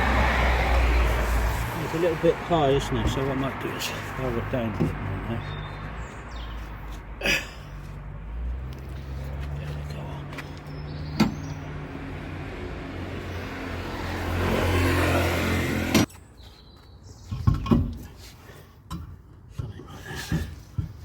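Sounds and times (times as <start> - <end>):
knocks and clunks: 4.7 - 5.6, 11.0 - 11.6, 17.3 - 18.2.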